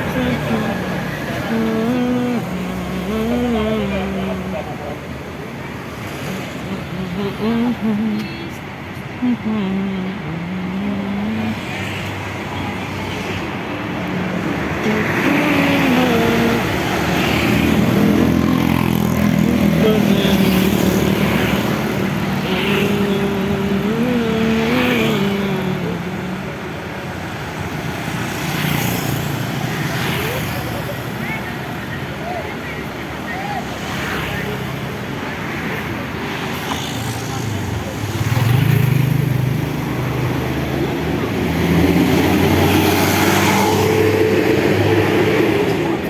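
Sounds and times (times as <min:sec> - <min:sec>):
bus engine running: 0:00.0 - 0:28.0.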